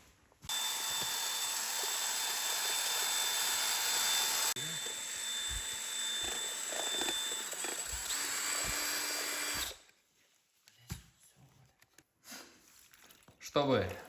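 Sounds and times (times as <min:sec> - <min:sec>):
paint sprayer motor whine: 0:00.5 - 0:09.8.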